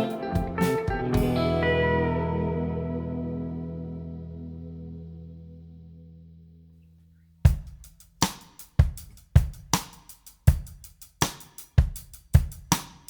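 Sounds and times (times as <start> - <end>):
drum kit beat: 0.0 - 1.9, 7.5 - 13.0
held music chord: 0.0 - 5.6.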